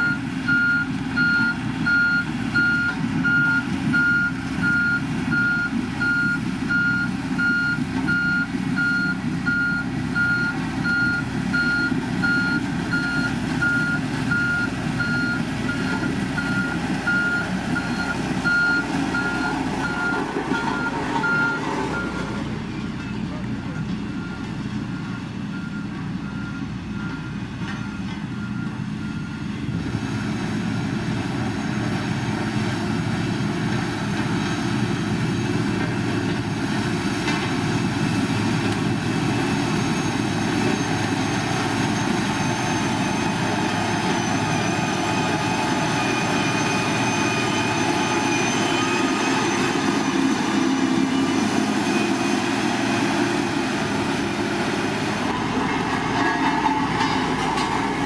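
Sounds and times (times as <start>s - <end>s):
reversing beeper: 0.0s - 29.5s, 39.6s - 53.5s
heavy diesel machinery running: 0.0s - 58.0s.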